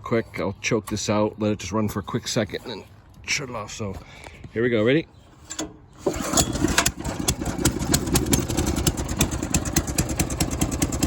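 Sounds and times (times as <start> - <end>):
small engine starting and running: 6.0 - 11.0.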